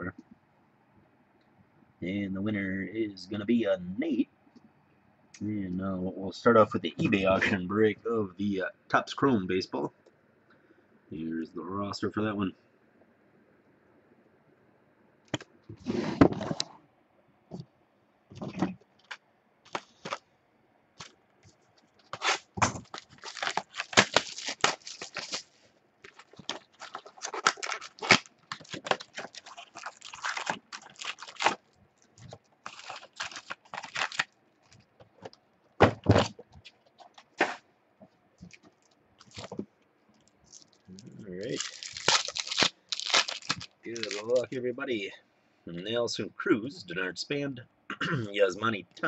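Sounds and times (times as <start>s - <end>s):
plastic wrapping crinkling and tearing: 21.9s - 35.4s, 38.4s - 44.5s.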